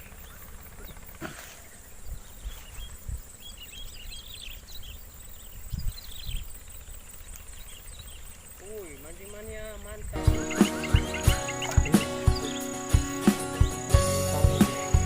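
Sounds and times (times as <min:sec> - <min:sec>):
high-pitched insect drone: 0:06.3 - 0:15.0
quick high chirping calls: 0:08.6 - 0:15.0
low thumps: 0:10.2 - 0:15.0.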